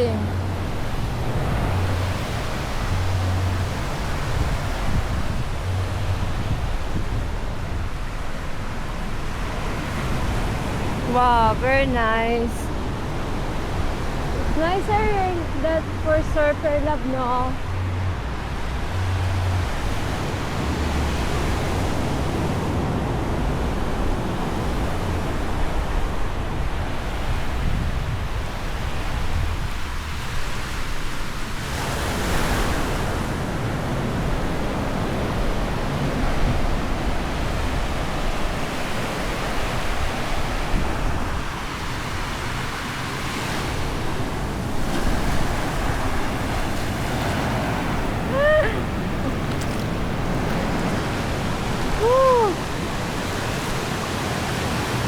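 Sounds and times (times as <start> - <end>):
ocean surf breaking: 0.0 - 55.0
wind rumbling on microphone: 0.0 - 55.0.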